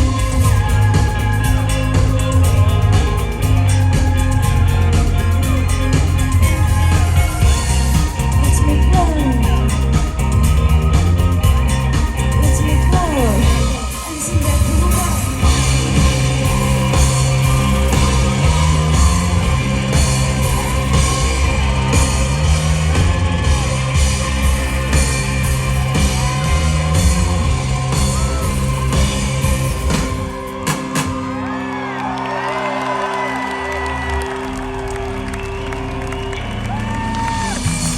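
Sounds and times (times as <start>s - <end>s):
shouted vocals: 0.0s - 30.3s
held synth or guitar tones: 0.0s - 31.5s
live rock band playing: 0.0s - 31.6s
crowd whooping: 0.0s - 37.9s.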